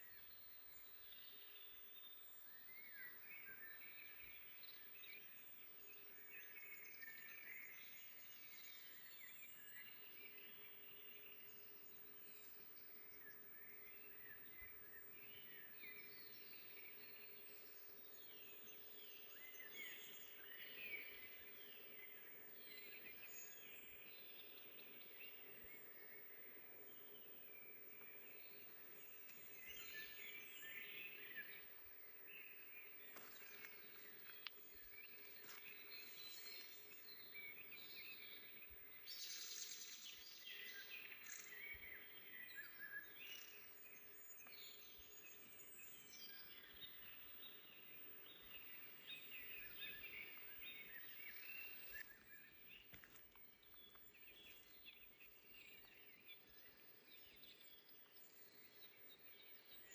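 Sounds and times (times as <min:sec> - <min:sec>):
faint ambient hiss: 0:00.0 - 0:59.9
small birds singing and chirping: 0:00.0 - 0:59.9.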